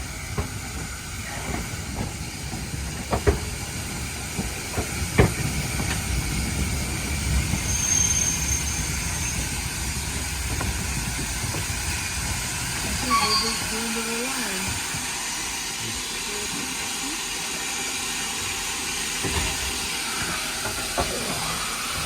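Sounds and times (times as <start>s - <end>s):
steam locomotive hissing: 0.0s - 22.0s.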